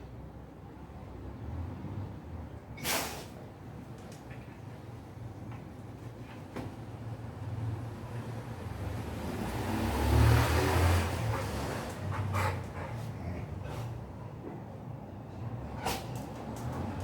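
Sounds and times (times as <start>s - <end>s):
motor vehicle passing by: 0.9s - 2.5s, 7.4s - 14.4s, 15.0s - 17.0s.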